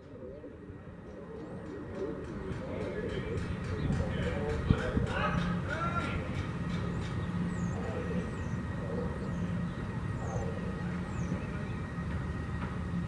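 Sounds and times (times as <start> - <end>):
distant voice announcement: 0.0 - 12.2.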